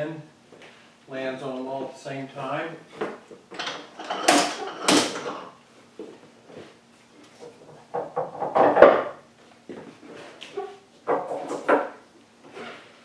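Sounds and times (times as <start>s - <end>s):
wooden board knocking and scraping: 7.9s - 9.2s.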